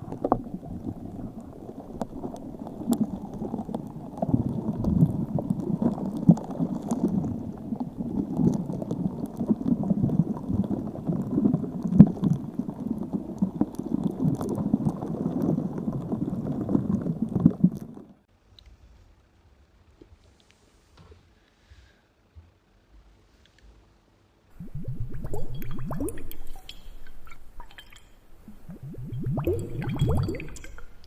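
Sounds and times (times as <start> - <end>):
muffled water bubbling: 0.0 - 18.2, 24.5 - 31.0.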